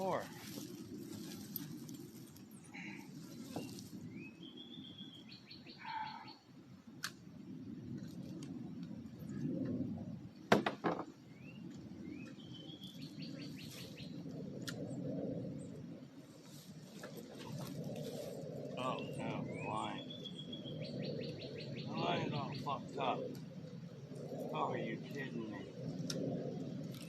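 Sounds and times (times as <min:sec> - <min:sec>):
steady low rumble: 0:00.0 - 0:27.0
songbird singing whistled notes: 0:03.4 - 0:06.4, 0:11.3 - 0:14.2, 0:18.8 - 0:23.0
sharp knocks: 0:10.5 - 0:11.1.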